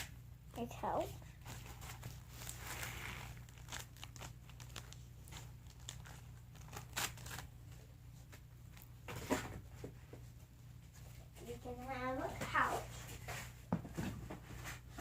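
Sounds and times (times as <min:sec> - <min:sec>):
cardboard and paper crinkling: 0:00.6 - 0:10.0.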